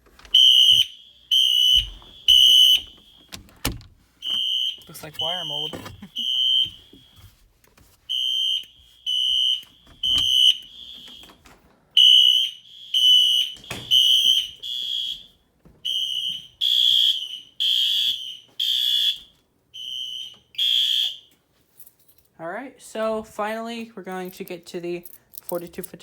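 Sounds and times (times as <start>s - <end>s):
fire alarm horn blasts: 0.3s - 3.4s, 4.2s - 7.3s, 8.1s - 11.4s, 12.0s - 21.4s
harsher alarm horn: 4.2s - 7.0s.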